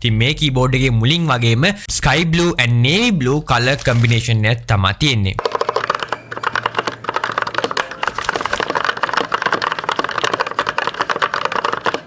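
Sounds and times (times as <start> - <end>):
mechanical keyboard typing: 5.4 - 12.0.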